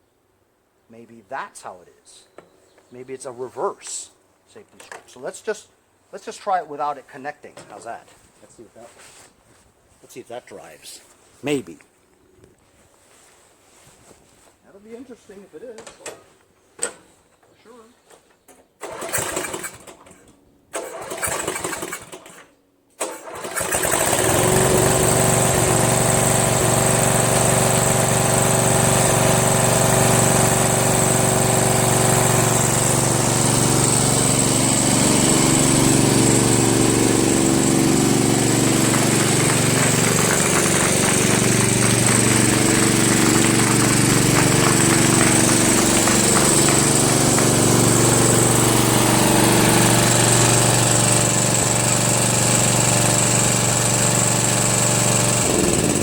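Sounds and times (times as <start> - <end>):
lawn tractor engine running: 18.8 - 20.2, 20.8 - 22.4, 23.0 - 56.0
lawn tractor engine cranking: 18.8 - 56.0.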